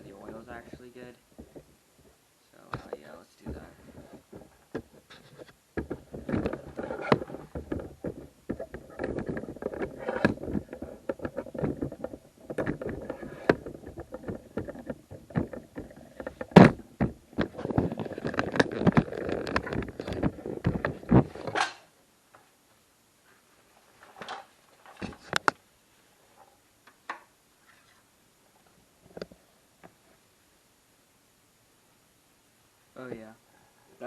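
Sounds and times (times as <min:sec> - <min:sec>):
hands working on push mower: 0:02.8 - 0:21.8.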